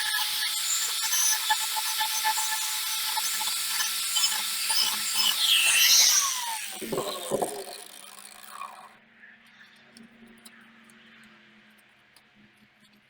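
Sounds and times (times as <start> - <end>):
power tool whining: 0.0 - 9.0.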